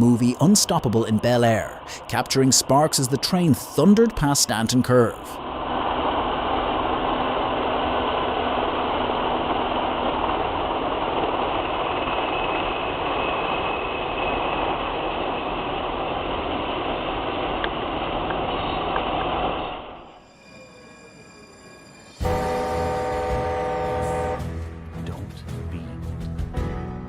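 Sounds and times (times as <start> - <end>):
train rumbling past: 0.0 - 26.5
high wheel squeal: 20.0 - 22.9.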